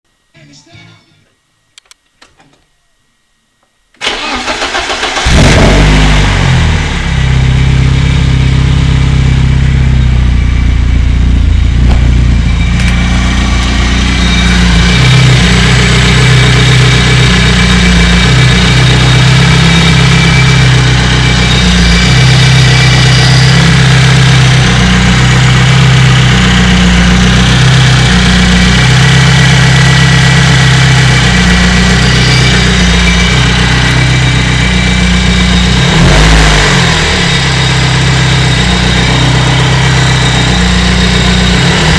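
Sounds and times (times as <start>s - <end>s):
engine cranked by starter: 4.0s - 7.6s, 11.6s - 41.9s
engine idling: 4.0s - 41.9s.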